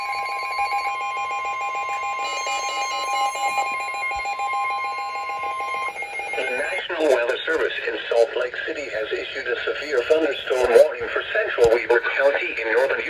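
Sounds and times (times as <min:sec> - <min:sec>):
steady high alarm tone: 0:00.0 - 0:08.4.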